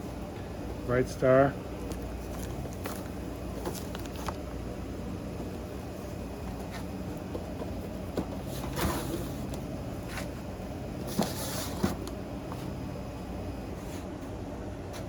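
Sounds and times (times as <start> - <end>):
low steady hum: 0.0 - 15.0
packages knocking and rustling: 1.9 - 4.4.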